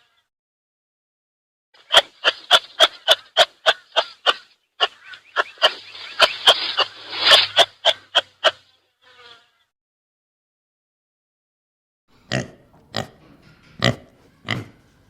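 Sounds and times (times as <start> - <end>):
animal short sharp calls: 1.8 - 8.8.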